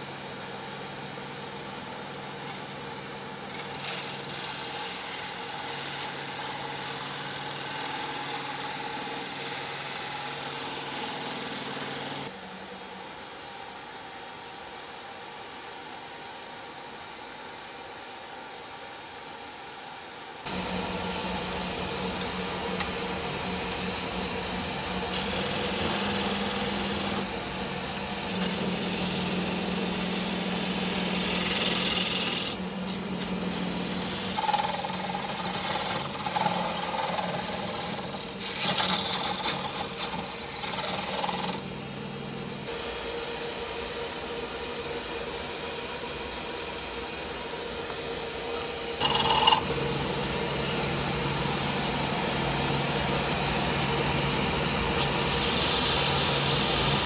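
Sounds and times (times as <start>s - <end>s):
uneven grinding noise: 20.5s - 41.8s, 49.0s - 50.0s, 54.0s - 57.0s
power tool humming: 20.5s - 43.2s, 46.0s - 57.0s.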